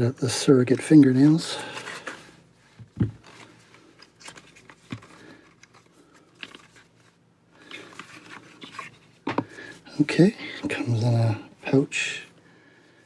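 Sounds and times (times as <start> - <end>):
packaging rustling: 3.0 - 9.4.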